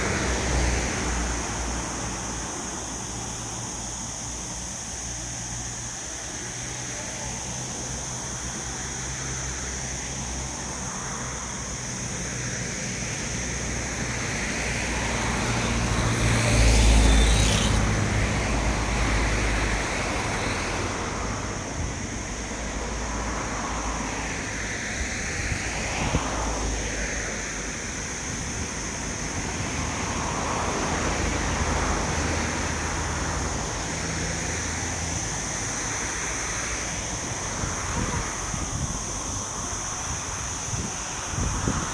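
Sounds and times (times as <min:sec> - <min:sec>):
road traffic noise: 0:00.0 - 0:41.9
vehicle passing close: 0:13.0 - 0:24.3.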